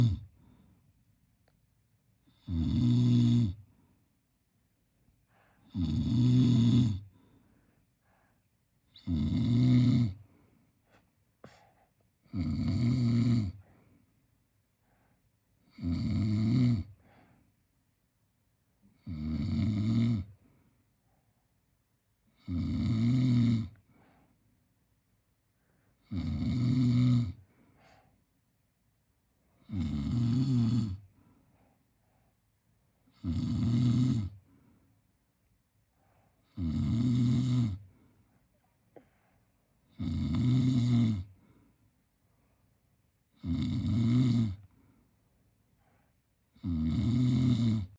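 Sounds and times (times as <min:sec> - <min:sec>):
person snoring: 0:00.0 - 0:00.3, 0:02.3 - 0:03.6, 0:05.6 - 0:07.1, 0:08.9 - 0:10.2, 0:12.3 - 0:13.6, 0:15.7 - 0:17.0, 0:22.4 - 0:23.8, 0:26.0 - 0:27.4, 0:29.6 - 0:31.0, 0:33.1 - 0:34.4, 0:36.5 - 0:37.8, 0:39.9 - 0:41.4, 0:43.4 - 0:44.7, 0:46.6 - 0:47.9
baby breathing quietly: 0:07.2 - 0:08.6, 0:10.8 - 0:12.1, 0:27.6 - 0:28.2, 0:38.1 - 0:39.6
baby snoring: 0:46.6 - 0:47.9.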